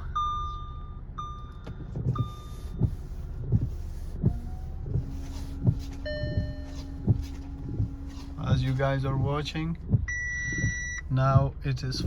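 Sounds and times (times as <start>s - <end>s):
steady low hum: 0.0s - 12.0s
windshield wipers sweeping glass: 1.8s - 12.0s
wiper thump at reversal: 2.1s - 11.6s
dashboard chimes: 5.6s - 11.4s.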